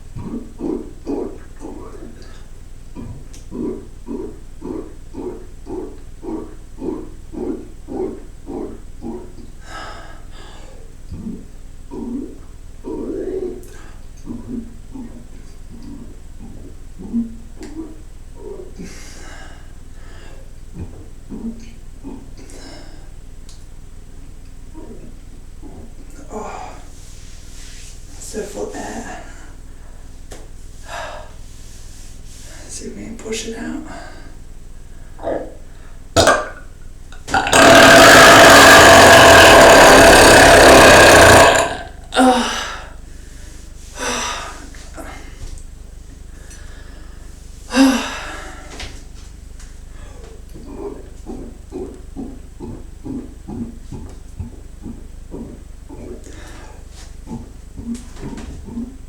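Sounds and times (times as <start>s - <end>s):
low gulping swallows: 0.0s - 9.7s, 48.6s - 59.0s
man belching loudly: 36.2s - 36.6s, 37.2s - 42.5s.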